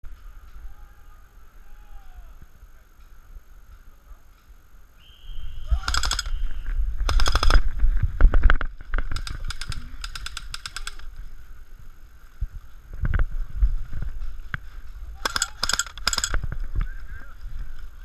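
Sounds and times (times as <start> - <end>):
low wind rumble on microphone: 5.4 - 15.3, 16.0 - 18.0
airsoft guns firing bursts: 5.7 - 6.3, 7.1 - 7.7, 9.1 - 11.1, 15.2 - 16.4.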